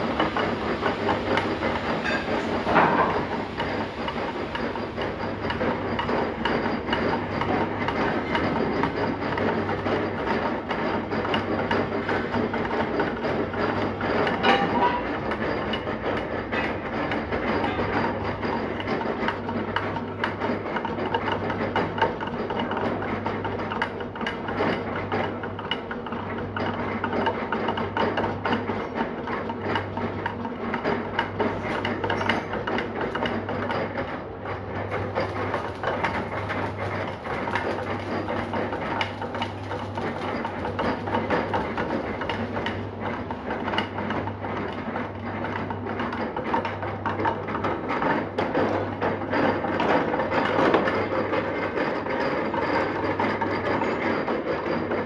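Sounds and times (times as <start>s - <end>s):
lathe cutting rattle: 34.8s - 43.0s.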